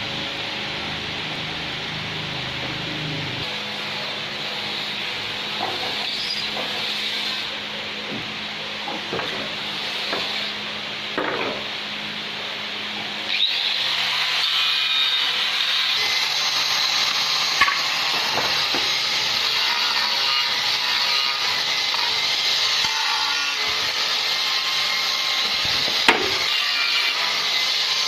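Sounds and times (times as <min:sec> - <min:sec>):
power tool grinding wood: 0:01.8 - 0:11.7, 0:13.3 - 0:28.0
sharp knocks: 0:25.8 - 0:26.4.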